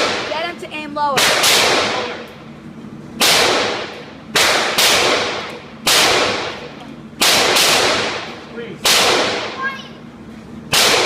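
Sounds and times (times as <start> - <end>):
gunshots with echo: 1.2 - 2.2, 3.2 - 6.6, 7.2 - 9.6, 10.7 - 11.0.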